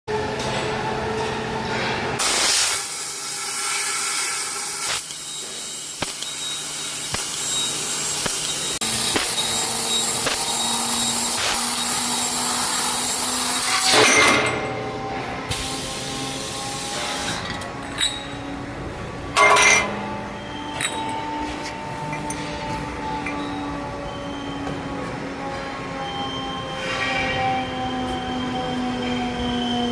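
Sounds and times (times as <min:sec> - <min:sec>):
compressed air hissing: 0:02.2 - 0:13.3.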